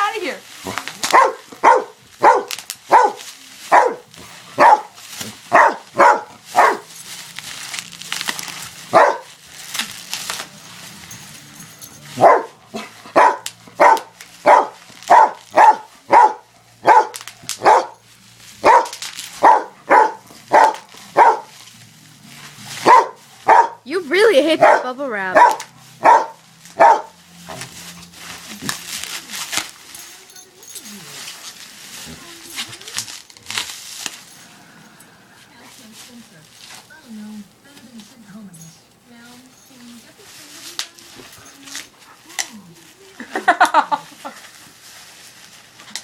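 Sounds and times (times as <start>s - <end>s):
dog barking: 1.1s - 6.9s, 8.9s - 9.3s, 12.2s - 18.0s, 18.6s - 21.5s, 22.8s - 23.8s, 24.6s - 24.8s, 25.4s - 27.2s.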